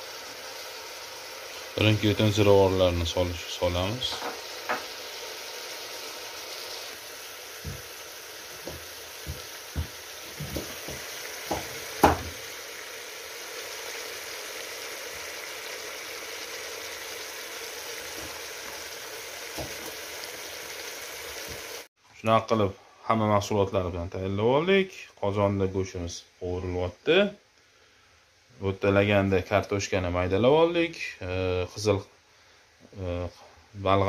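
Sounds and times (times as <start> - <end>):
meat sizzling in oil: 0.0 - 21.9
utensil knocking against pot: 4.1 - 4.9, 8.6 - 12.4.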